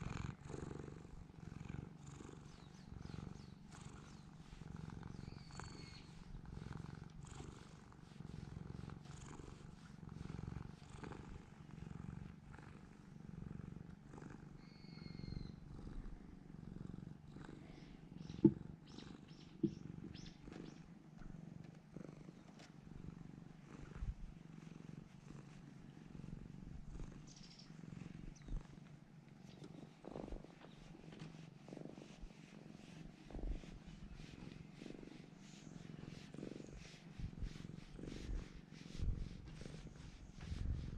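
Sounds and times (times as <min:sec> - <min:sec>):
cat purring: 0:00.0 - 0:40.9.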